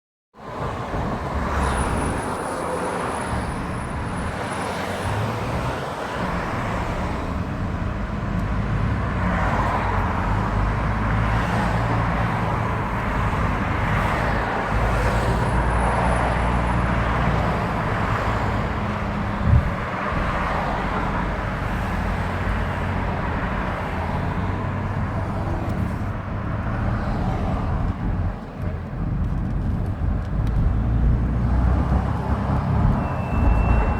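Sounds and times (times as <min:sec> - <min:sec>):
car road and engine noise: 0:00.4 - 0:33.9
thin high-pitched squeal: 0:32.9 - 0:33.9.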